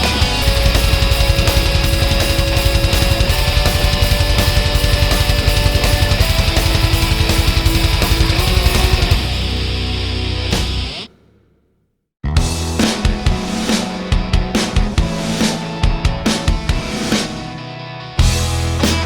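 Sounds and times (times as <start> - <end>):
distorted electric guitar: 0.0 - 11.1
fast driving drum beat: 0.0 - 11.4, 12.4 - 17.5.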